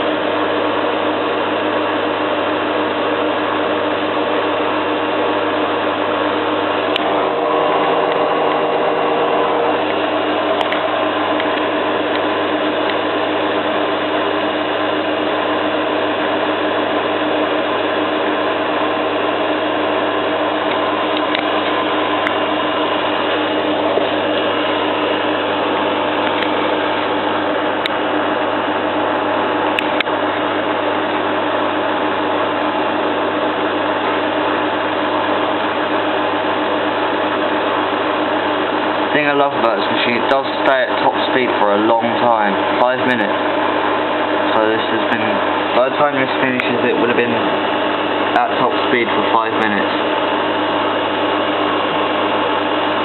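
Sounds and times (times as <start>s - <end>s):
washing machine spinning: 0.0s - 53.0s.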